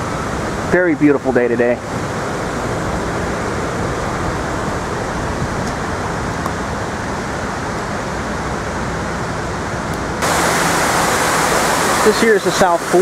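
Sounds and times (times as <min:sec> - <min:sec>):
waterfall rushing: 0:10.2 - 0:13.0.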